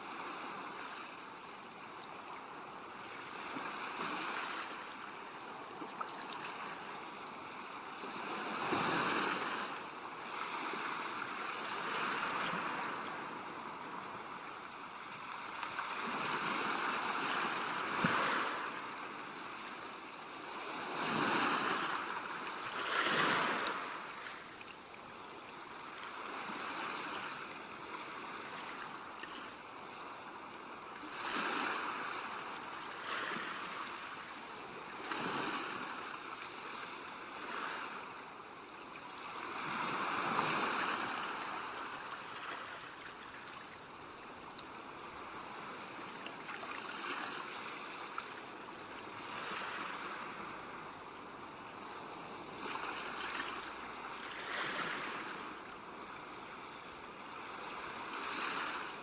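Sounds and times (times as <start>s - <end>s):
ocean waves breaking: 7.5s - 24.4s, 39.2s - 42.9s.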